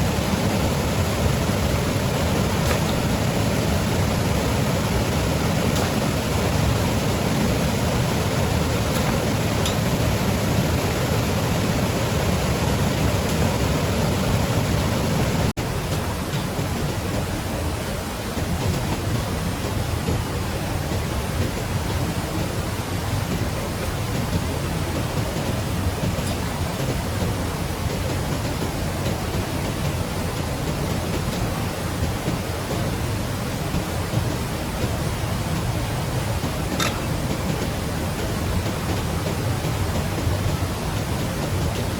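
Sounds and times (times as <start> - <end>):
water rushing: 0.0 - 41.9.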